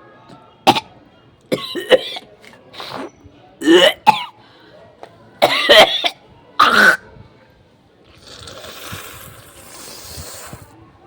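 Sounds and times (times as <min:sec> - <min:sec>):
person coughing harshly: 0:01.5 - 0:02.2, 0:03.6 - 0:04.4, 0:05.4 - 0:07.0.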